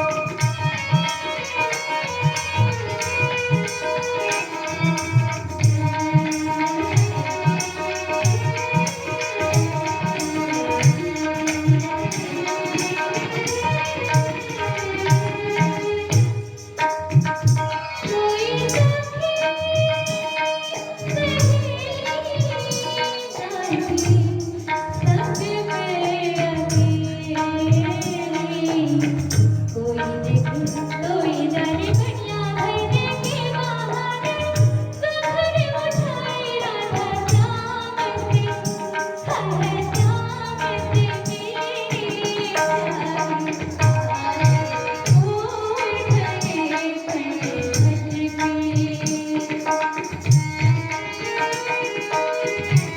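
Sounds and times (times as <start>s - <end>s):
woman singing: 0.0s - 52.9s
tabla bass strokes: 22.6s - 41.3s.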